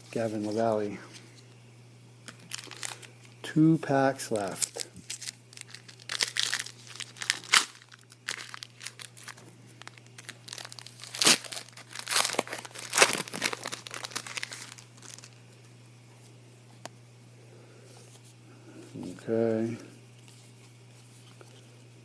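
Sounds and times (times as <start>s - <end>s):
foil wrapper tearing and crinkling: 2.3s - 3.1s, 4.5s - 15.4s.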